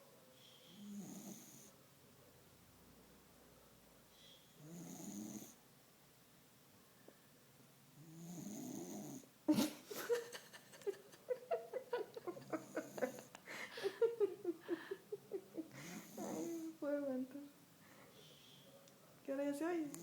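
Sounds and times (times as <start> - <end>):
dog snoring: 0.7 - 1.8, 4.6 - 5.6, 8.0 - 9.3, 12.5 - 13.2, 15.8 - 16.8
person laughing: 9.5 - 16.3.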